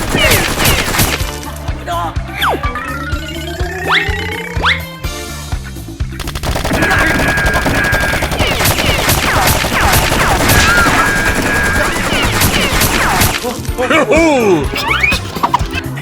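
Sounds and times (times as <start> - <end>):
automatic gunfire: 0.0 - 1.4, 6.2 - 13.5
background music: 0.0 - 16.0.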